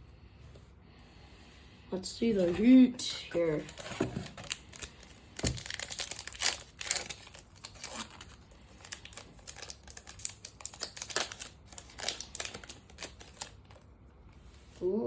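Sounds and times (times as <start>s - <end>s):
foil wrapper crinkling and tearing: 3.4s - 13.9s.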